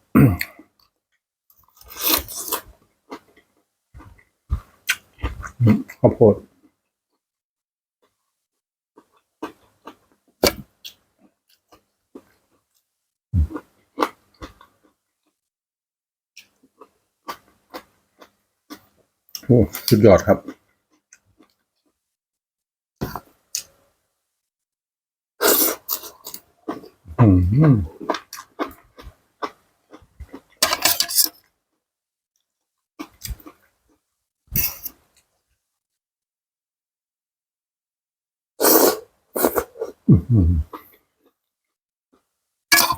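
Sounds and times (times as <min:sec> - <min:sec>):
loud chewing or slurping: 0:01.8 - 0:03.2, 0:25.4 - 0:27.0, 0:38.6 - 0:41.0
mouth sounds: 0:05.2 - 0:06.5, 0:13.4 - 0:13.7, 0:27.1 - 0:28.2, 0:38.6 - 0:40.8
person chewing food: 0:09.0 - 0:12.8, 0:13.4 - 0:15.4, 0:16.4 - 0:19.9, 0:25.5 - 0:31.0, 0:33.0 - 0:35.0.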